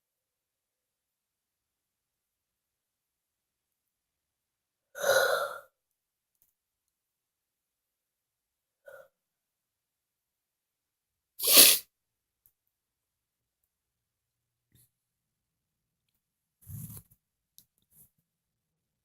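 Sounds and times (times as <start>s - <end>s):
person sneezing loudly: 11.4s - 11.8s.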